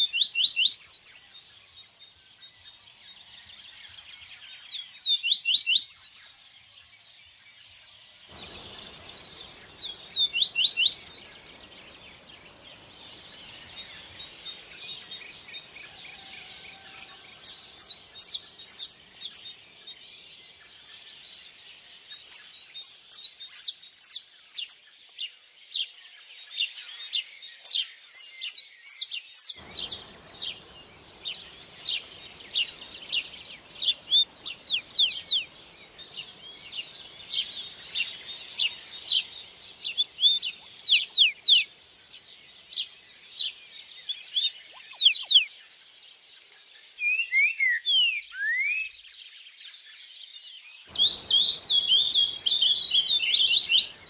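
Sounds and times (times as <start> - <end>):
songbirds chirping: 0.0 - 54.0
stream water rushing: 50.9 - 54.0.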